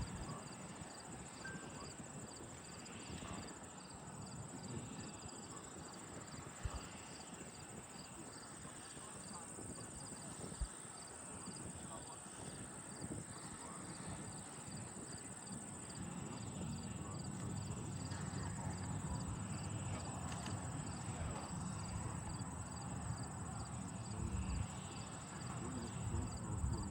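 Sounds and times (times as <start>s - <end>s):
crickets chirping: 0.0s - 26.9s.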